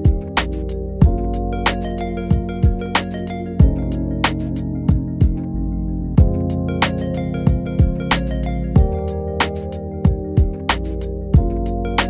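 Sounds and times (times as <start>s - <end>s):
instrumental music with beat: 0.0s - 12.0s
kick drum hits: 1.0s - 1.2s, 3.6s - 3.8s, 6.2s - 6.4s, 7.5s - 8.1s, 8.8s - 9.0s, 10.1s - 10.6s.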